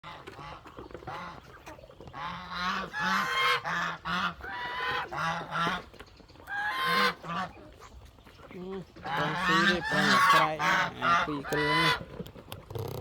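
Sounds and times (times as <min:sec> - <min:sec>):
goose honking: 0:02.1 - 0:05.9, 0:06.5 - 0:07.6, 0:09.0 - 0:12.1.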